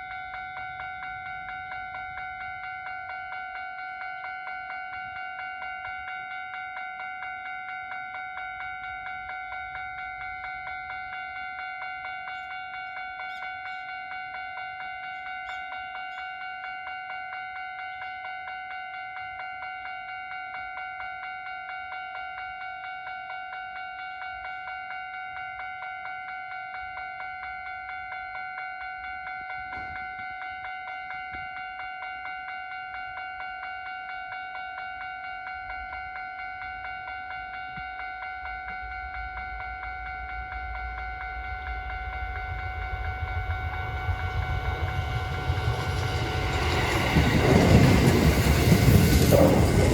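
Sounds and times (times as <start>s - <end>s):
level crossing alarm ringing: 0.0s - 49.9s.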